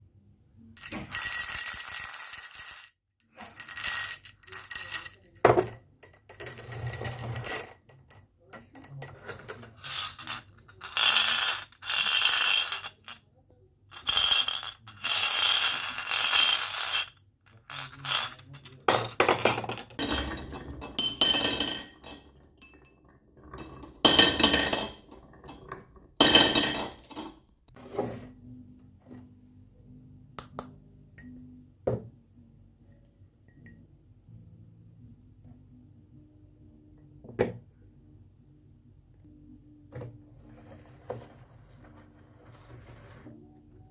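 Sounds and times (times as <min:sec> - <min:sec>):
marbles clattering down wooden track: 0:09.3 - 0:13.2, 0:14.0 - 0:21.0.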